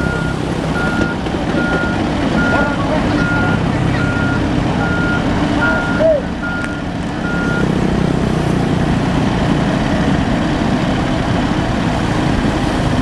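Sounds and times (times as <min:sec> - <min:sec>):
reversing alarm beep: 0:00.0 - 0:07.7
diesel engine running: 0:00.0 - 0:13.0.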